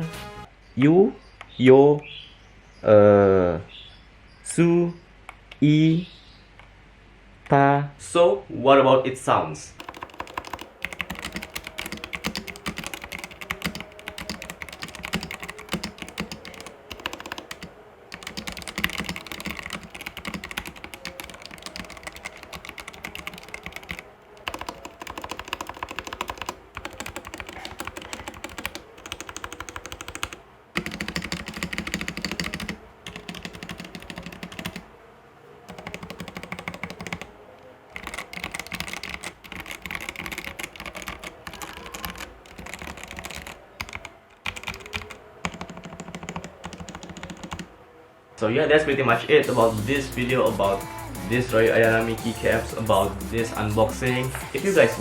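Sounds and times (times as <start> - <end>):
mechanical keyboard typing: 9.8 - 34.8, 35.7 - 37.3, 37.9 - 47.7.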